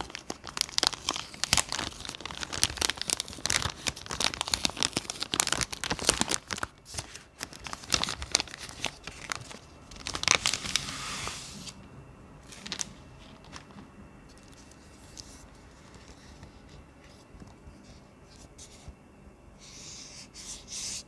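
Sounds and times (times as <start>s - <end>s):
packaging crinkling and rustling: 0.0s - 11.8s, 12.4s - 17.6s.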